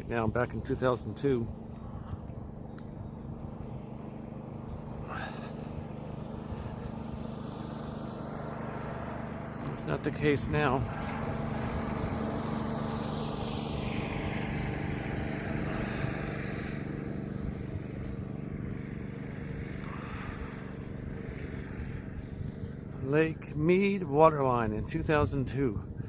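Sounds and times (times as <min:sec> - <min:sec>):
truck engine humming: 0:00.0 - 0:23.3.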